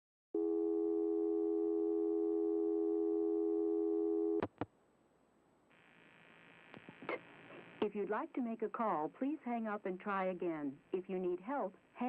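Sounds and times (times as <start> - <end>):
two-note telephone line tone: 0.4 - 4.4.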